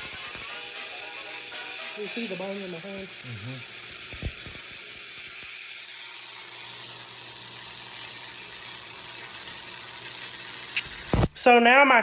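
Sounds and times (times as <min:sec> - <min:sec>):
high-pitched hiss and buzz: 0:00.0 - 0:07.1.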